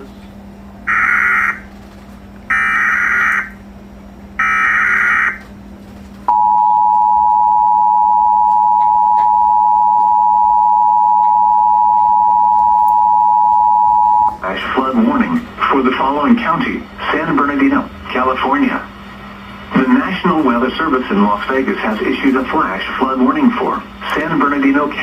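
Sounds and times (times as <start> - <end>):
warbling data bursts: 4.4 - 5.4
two-tone alert signal: 6.3 - 14.4.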